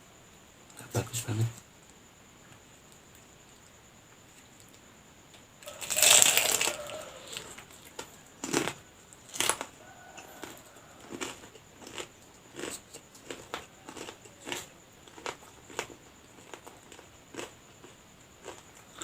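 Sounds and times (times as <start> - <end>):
crunching bite into spring roll: 5.6 - 9.7
close-up chewing with crunches: 5.6 - 19.0.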